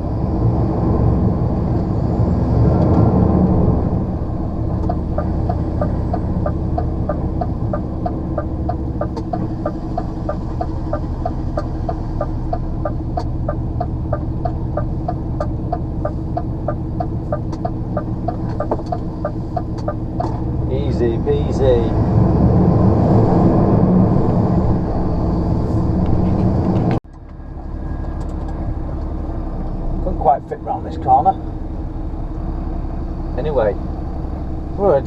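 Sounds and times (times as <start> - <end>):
diesel lorry engine running: 0.0 - 35.0
turn indicator ticking: 4.6 - 20.4.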